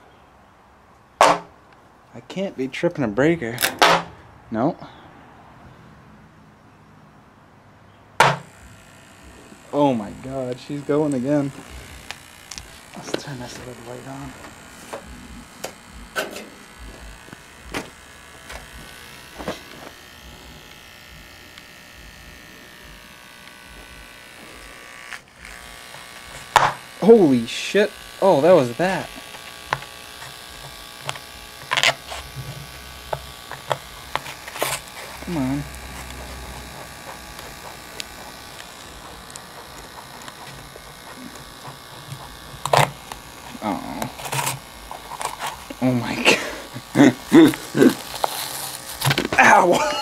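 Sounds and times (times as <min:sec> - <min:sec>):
sharp cracks: 0:08.2 - 0:21.9, 0:24.9 - 0:27.4, 0:28.0 - 0:45.8
subwoofers buzzing: 0:08.2 - 0:27.2, 0:29.1 - 0:46.1
sharp ticks from speaker: 0:35.8 - 0:43.4.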